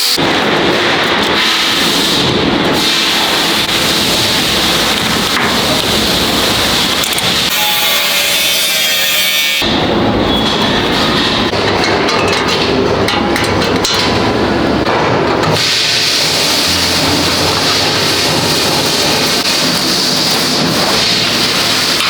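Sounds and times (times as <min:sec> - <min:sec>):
noisy workshop background: 0:00.0 - 0:22.0
squeaky scraping: 0:06.9 - 0:11.6.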